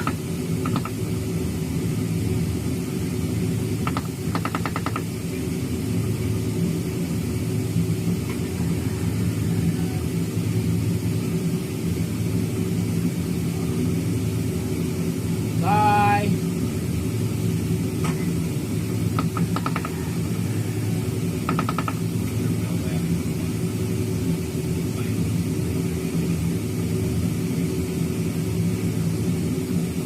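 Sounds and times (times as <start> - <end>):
airliner cabin drone: 0.0 - 30.0.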